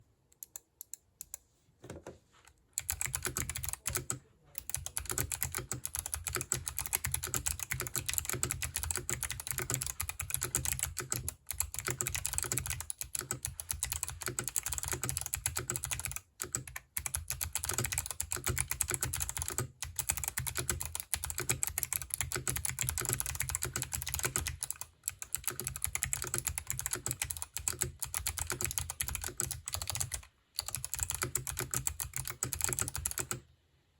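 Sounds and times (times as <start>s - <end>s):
mechanical keyboard typing: 2.8s - 33.4s.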